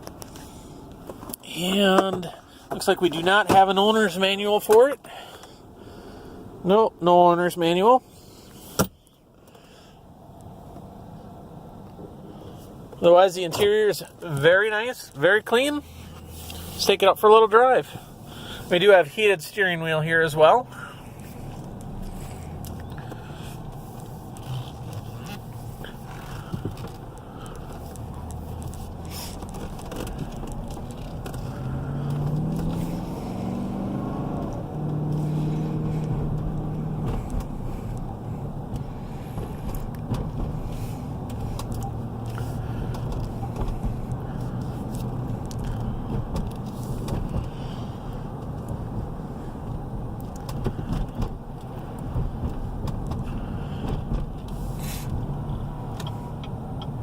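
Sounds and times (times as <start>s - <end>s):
road noise: 0.0s - 57.0s
car engine accelerating: 15.1s - 18.8s, 19.6s - 57.0s.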